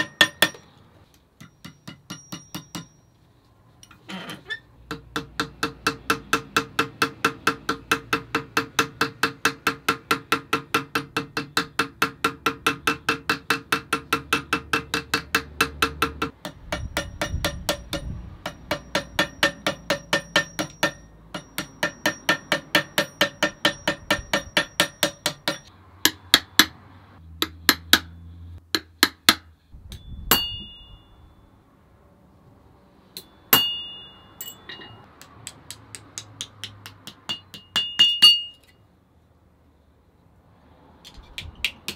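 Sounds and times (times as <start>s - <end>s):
ringing hammer blows: 0.0s - 0.7s, 1.4s - 3.2s, 12.6s - 25.7s, 29.8s - 31.6s, 33.1s - 35.1s.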